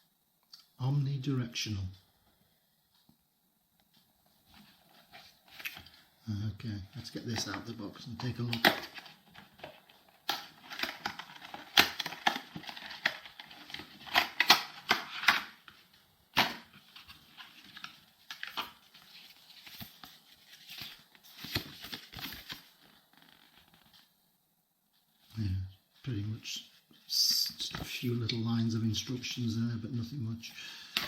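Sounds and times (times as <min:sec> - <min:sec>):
packaging rustling and crinkling: 0:07.1 - 0:24.1.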